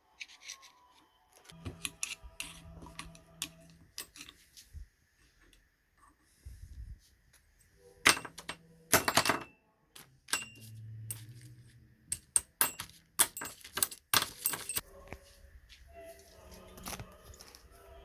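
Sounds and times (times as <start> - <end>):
metal tools clinking: 2.9 - 4.4, 8.0 - 9.6, 10.3 - 11.5, 12.1 - 14.8.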